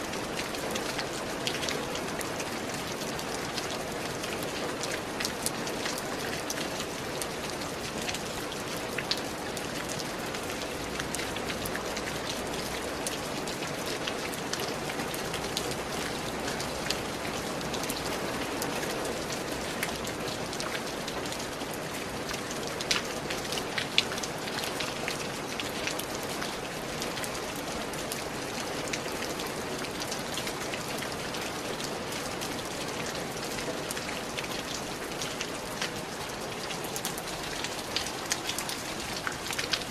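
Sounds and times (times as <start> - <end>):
rain pattering on a surface: 0.0 - 39.9.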